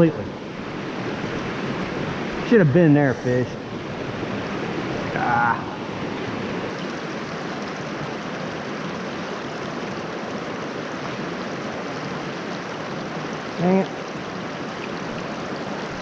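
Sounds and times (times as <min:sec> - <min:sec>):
creek water over rocks: 0:00.0 - 0:16.0
man exclaiming: 0:05.1 - 0:05.8.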